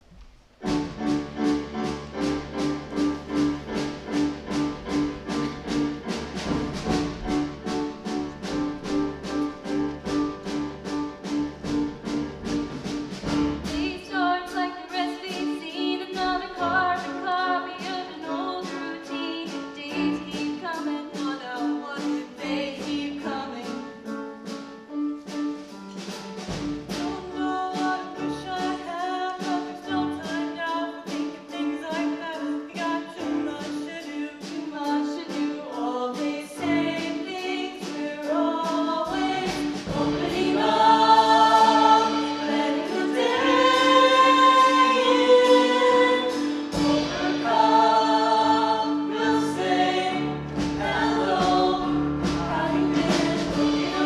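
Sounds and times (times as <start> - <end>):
choir singing: 27.0 - 54.0.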